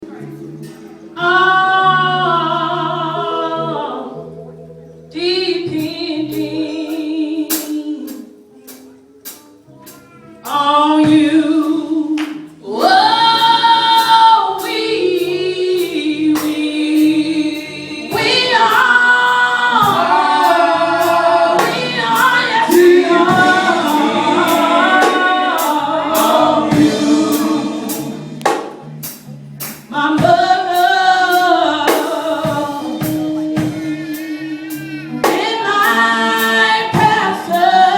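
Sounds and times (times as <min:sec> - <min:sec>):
gospel choir singing: 0:00.0 - 0:08.6, 0:10.4 - 0:37.9.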